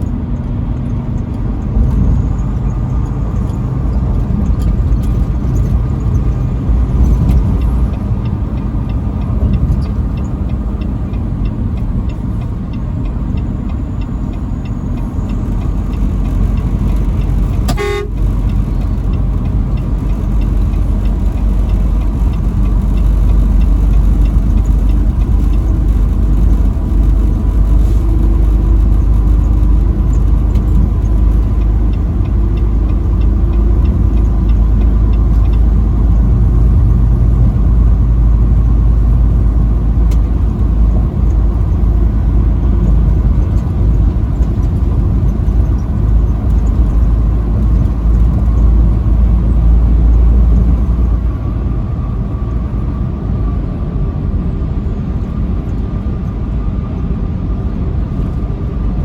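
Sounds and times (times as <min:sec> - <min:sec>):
truck driving on highway: 0:00.0 - 0:59.0
truck horn toot: 0:17.6 - 0:18.5.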